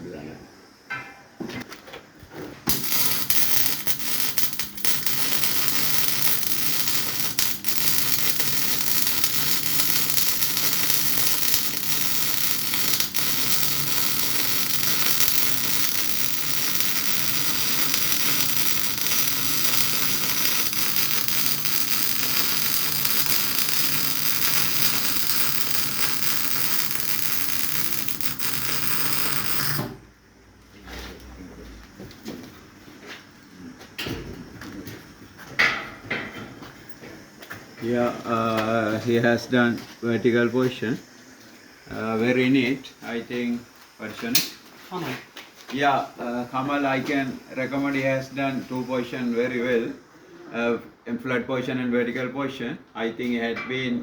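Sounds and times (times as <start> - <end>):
welder sputters: 2.7 - 30.0
welding arc crackling: 2.7 - 30.0.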